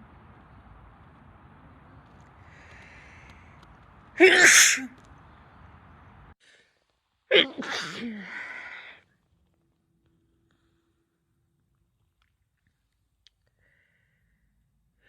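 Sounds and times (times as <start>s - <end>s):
woman sneezing: 4.2s - 4.9s, 7.3s - 8.9s.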